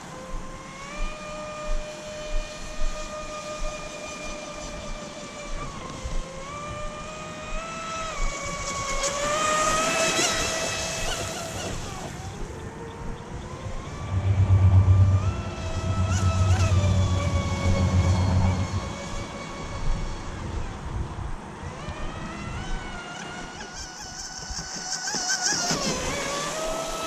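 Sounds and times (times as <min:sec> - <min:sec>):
rc boat motor whining: 0:00.1 - 0:27.0
low rumble: 0:13.3 - 0:21.4.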